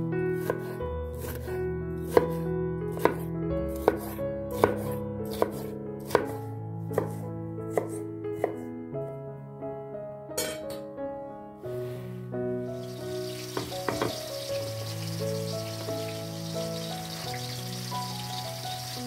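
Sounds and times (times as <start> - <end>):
knife chopping on cutting board: 0.4 - 8.6.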